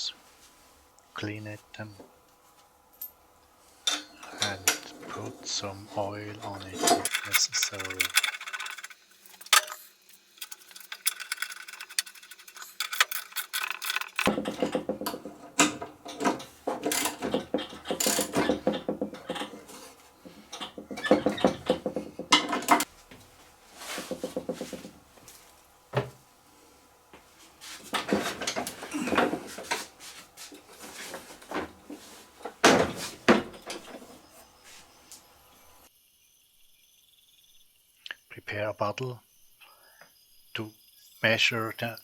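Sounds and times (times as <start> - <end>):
metal tools clinking and scraping: 2.9 - 25.7, 26.8 - 35.8.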